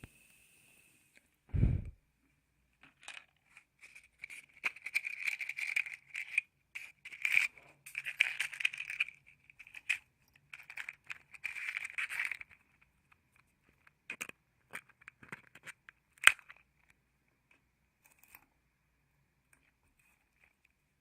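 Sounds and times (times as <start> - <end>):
matchbox clicks and scratches: 3.0 - 17.0.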